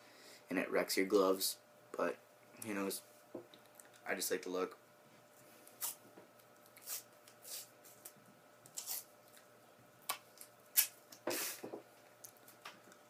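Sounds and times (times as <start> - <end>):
tape ripping rasps: 5.8 - 6.0, 6.7 - 9.1, 10.1 - 11.0.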